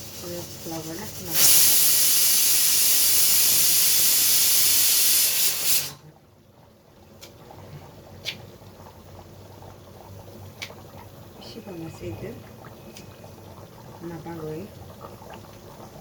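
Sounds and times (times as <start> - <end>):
steam hissing from pot: 0.0 - 6.1, 10.8 - 16.0.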